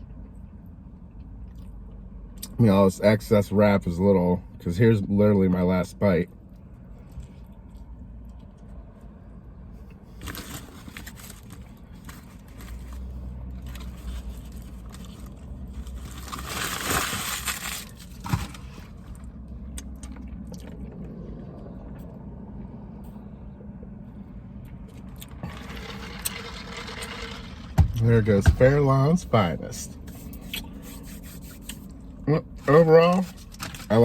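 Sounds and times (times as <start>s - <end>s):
steady low hum: 17.8s - 34.0s.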